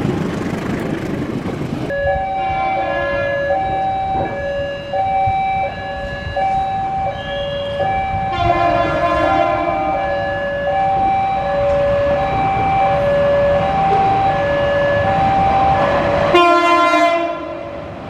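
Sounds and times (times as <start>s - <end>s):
locomotive air horn two notes: 2.0s - 3.7s, 7.1s - 10.1s, 16.3s - 17.7s.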